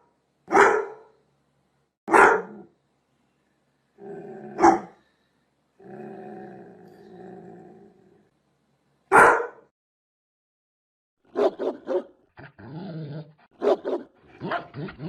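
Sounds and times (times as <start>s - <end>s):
large dog barking: 0.5s - 1.1s, 2.1s - 2.7s, 4.4s - 5.0s, 9.1s - 9.7s, 11.3s - 12.2s, 13.5s - 15.0s.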